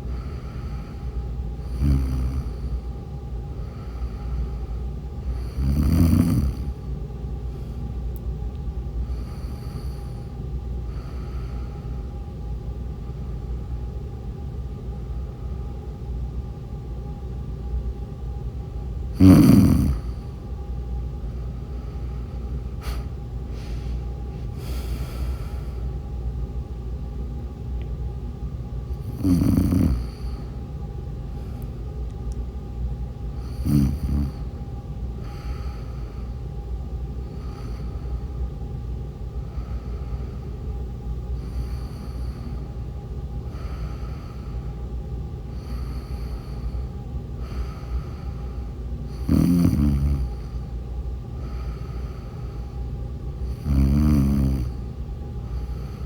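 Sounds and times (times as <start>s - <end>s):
quiet breaths: 0.0s - 12.5s, 19.0s - 26.1s, 28.9s - 32.6s, 33.2s - 56.0s
steady low hum: 0.0s - 56.0s
woman snoring: 1.6s - 2.8s, 5.2s - 6.8s, 9.1s - 10.3s, 19.2s - 20.3s, 29.0s - 30.5s, 33.4s - 34.5s, 49.1s - 50.6s, 53.4s - 54.8s.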